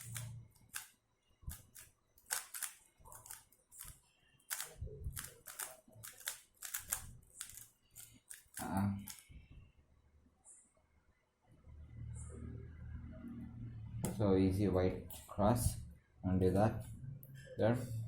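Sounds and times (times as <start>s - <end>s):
puzzle cube clicking: 1.5s - 9.2s.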